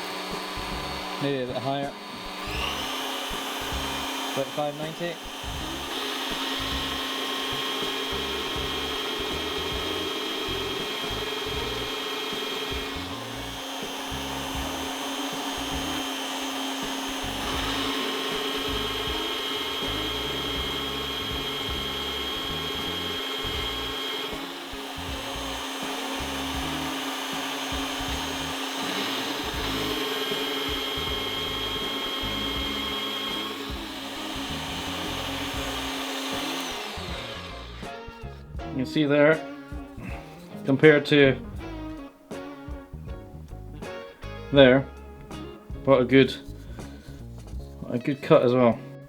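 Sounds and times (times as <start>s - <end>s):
drill press motor whining: 0.0s - 40.4s.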